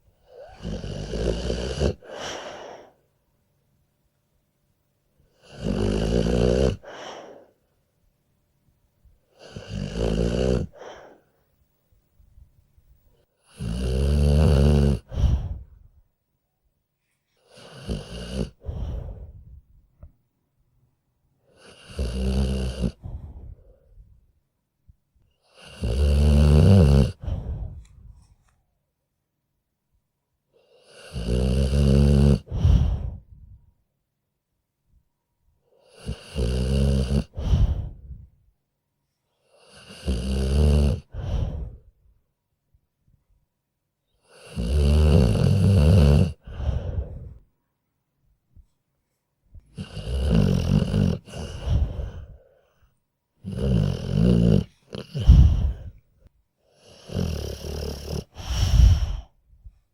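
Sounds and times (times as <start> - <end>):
dog snoring: 0.3 - 2.9, 5.3 - 7.5, 9.3 - 11.2, 13.4 - 15.8, 17.4 - 19.5, 21.5 - 24.0, 25.4 - 27.9, 30.6 - 33.3, 35.8 - 38.3, 39.4 - 41.9, 44.2 - 47.5, 49.5 - 52.8, 53.4 - 56.1, 56.7 - 59.4.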